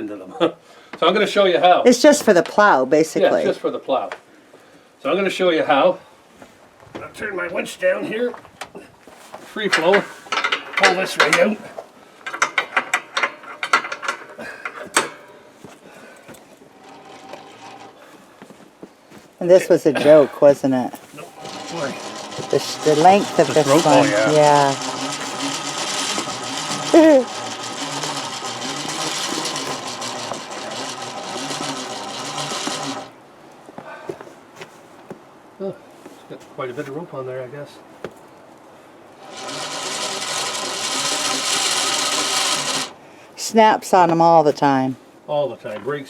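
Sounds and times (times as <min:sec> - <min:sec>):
winch drum clicking: 0:09.7 - 0:15.4, 0:16.2 - 0:18.2, 0:21.2 - 0:33.2, 0:39.1 - 0:43.0.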